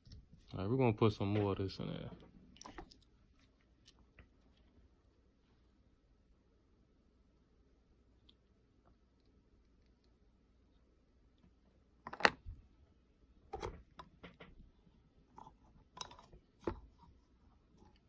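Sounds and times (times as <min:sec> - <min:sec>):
plastic containers clicking and knocking: 0:12.0 - 0:12.6.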